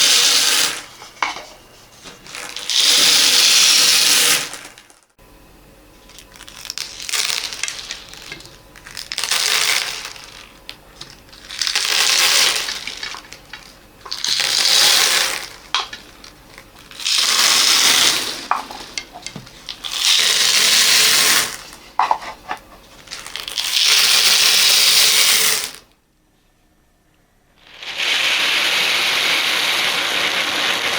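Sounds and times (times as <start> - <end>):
small beads pouring and rattling: 2.3 - 5.0, 6.1 - 10.6, 11.4 - 18.9, 19.7 - 21.7, 23.0 - 25.8.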